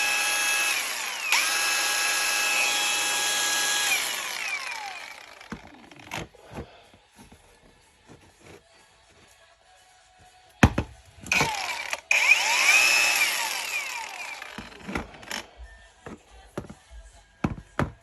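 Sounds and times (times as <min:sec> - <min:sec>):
angle grinder running: 0:00.0 - 0:06.3, 0:11.3 - 0:15.6.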